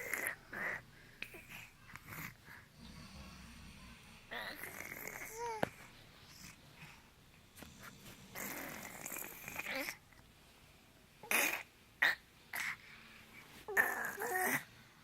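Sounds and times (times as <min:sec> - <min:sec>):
child imitating snoring: 0:02.1 - 0:05.6, 0:08.3 - 0:10.0, 0:13.7 - 0:14.6.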